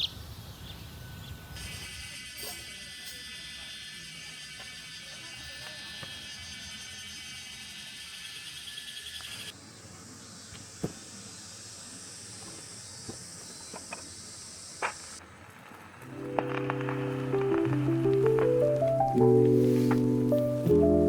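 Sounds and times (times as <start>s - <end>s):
insects chirping chorus: 0.0s - 15.2s
steady hiss: 9.5s - 21.0s.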